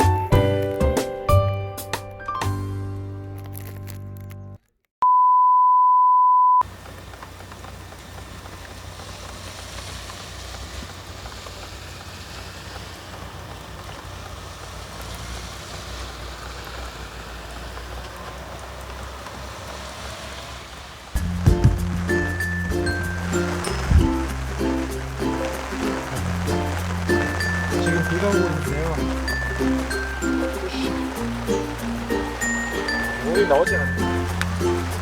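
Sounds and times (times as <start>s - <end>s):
rain falling: 0.0s - 1.2s, 6.6s - 35.0s
music: 0.0s - 4.6s, 21.2s - 35.0s
single-pitch electronic beep: 5.0s - 6.6s.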